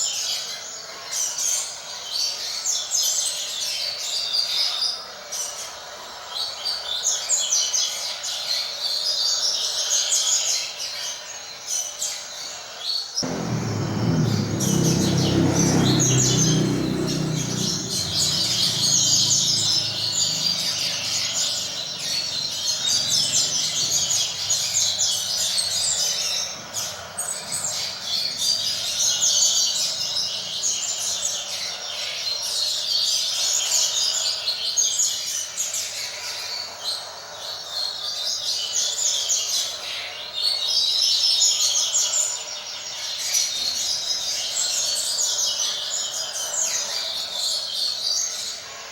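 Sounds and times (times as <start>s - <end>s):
low rumble: 13.2s - 23.9s.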